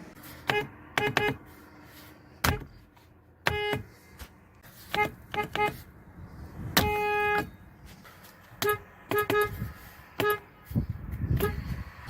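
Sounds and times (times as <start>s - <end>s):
thin car horns tooting: 0.2s - 1.6s, 2.4s - 4.0s, 4.6s - 5.9s, 6.7s - 7.7s, 8.5s - 12.0s.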